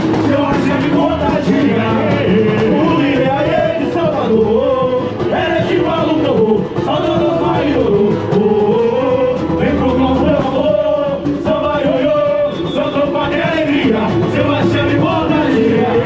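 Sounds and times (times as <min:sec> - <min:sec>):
chorus voices: 0:00.0 - 0:16.0
lead singer singing: 0:00.0 - 0:16.0
samba percussion: 0:00.0 - 0:16.0.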